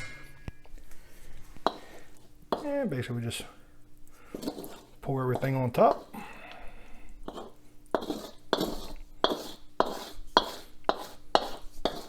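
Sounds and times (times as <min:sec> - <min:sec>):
utensil clinking and scraping dish: 0:04.3 - 0:06.3, 0:07.3 - 0:12.0.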